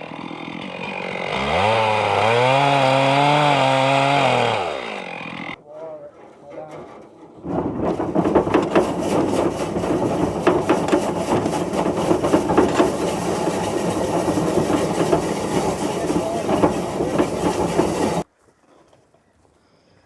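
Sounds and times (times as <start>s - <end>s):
engine running with clatter: 7.5s - 18.3s.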